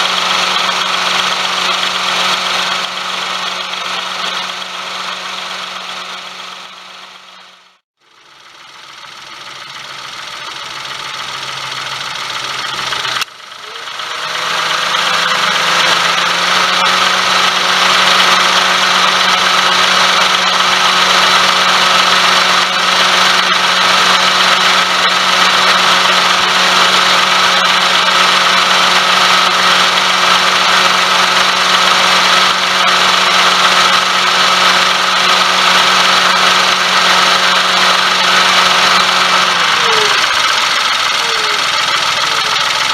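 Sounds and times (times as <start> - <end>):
car engine running: 0.0 - 42.9.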